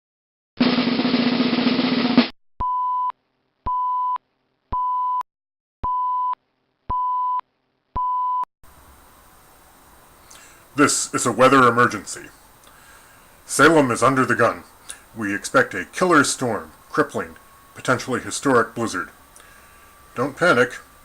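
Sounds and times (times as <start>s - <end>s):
loud burst of noise: 0.6s - 2.3s.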